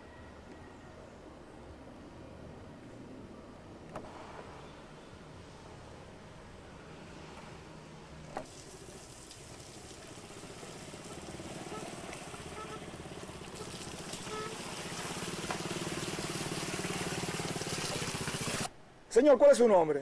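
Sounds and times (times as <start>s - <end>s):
vehicle engine humming: 3.7s - 18.7s.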